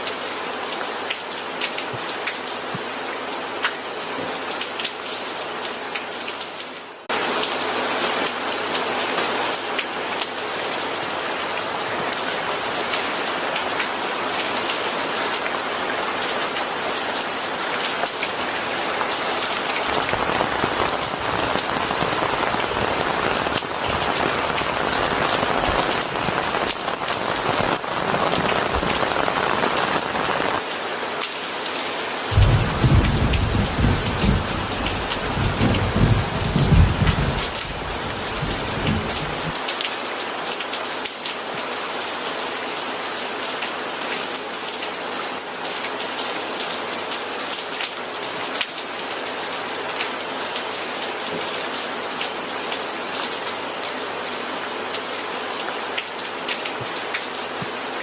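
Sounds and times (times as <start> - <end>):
rain pattering on surfaces: 0.0 - 58.0
low rumble of thunder: 32.3 - 39.6.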